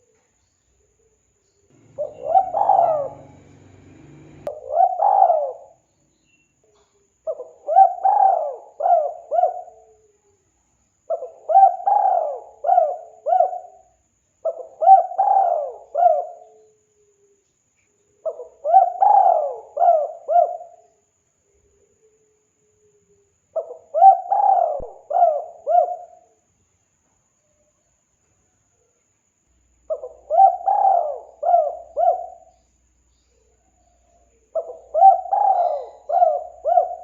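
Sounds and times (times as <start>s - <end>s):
dove cooing: 1.8s - 5.8s, 7.3s - 10.1s, 11.1s - 16.6s, 18.2s - 20.8s, 23.6s - 26.3s, 29.9s - 32.5s, 34.2s - 37.0s.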